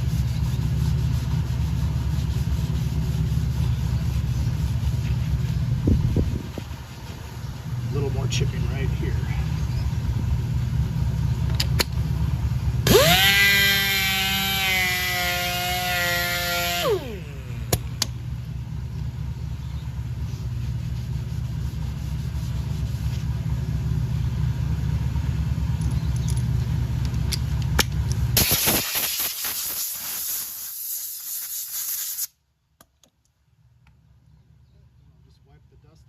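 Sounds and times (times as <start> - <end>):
low engine drone: 0.0 - 28.5
power sander whine: 12.8 - 18.1
hiss: 28.4 - 32.4.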